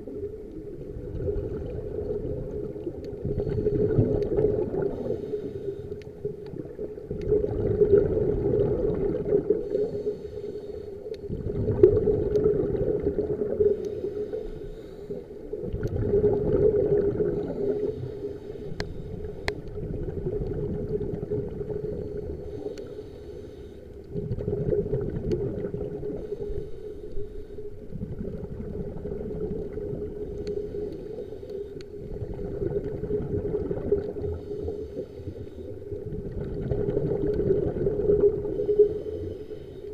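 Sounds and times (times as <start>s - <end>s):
underwater bubbles gurgling: 0.0s - 39.9s.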